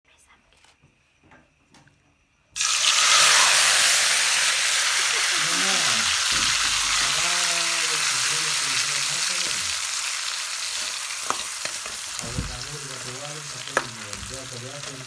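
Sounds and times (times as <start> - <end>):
food sizzling in hot oil: 2.6 - 15.0
utensil clicking against pan: 10.8 - 15.0.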